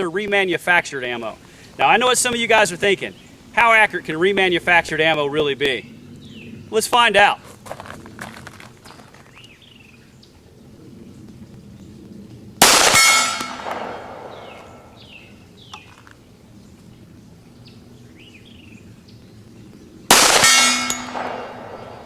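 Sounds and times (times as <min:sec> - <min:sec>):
pistol shots with ringing tail: 0:12.6 - 0:15.1, 0:20.1 - 0:22.0.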